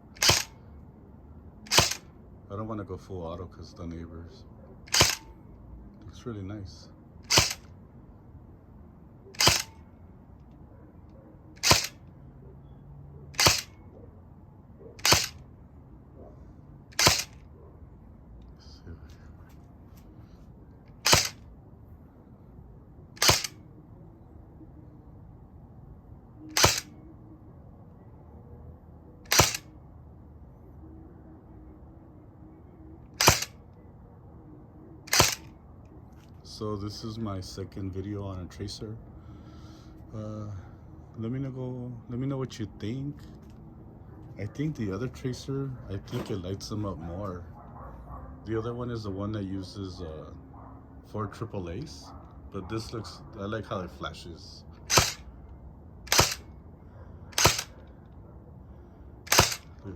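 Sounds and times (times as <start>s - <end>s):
airsoft gun shots: 0.2s - 0.6s, 1.7s - 2.0s, 4.9s - 5.3s, 7.3s - 7.7s, 9.4s - 9.8s, 11.6s - 12.0s, 13.4s - 13.8s, 15.0s - 15.4s, 17.0s - 17.4s, 21.0s - 21.4s, 23.2s - 23.6s, 26.5s - 26.9s, 29.3s - 29.7s, 33.2s - 33.6s, 35.1s - 35.5s, 54.9s - 55.2s, 56.1s - 56.5s, 57.4s - 57.8s, 59.3s - 59.7s.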